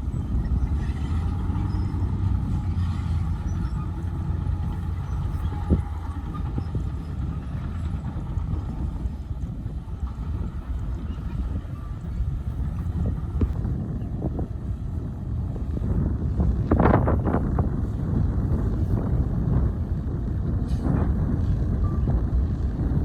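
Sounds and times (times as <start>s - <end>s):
diesel engine rumbling: 0.0s - 23.0s.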